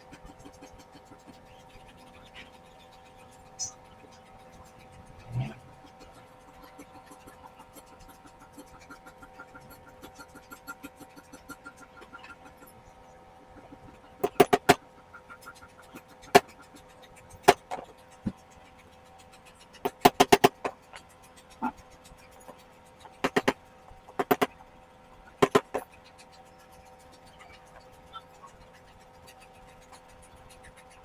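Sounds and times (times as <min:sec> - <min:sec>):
faint fast ticking: 0:00.0 - 0:31.0
tools tapping on metal: 0:13.6 - 0:14.8, 0:19.8 - 0:21.0, 0:23.2 - 0:24.6, 0:25.4 - 0:25.9.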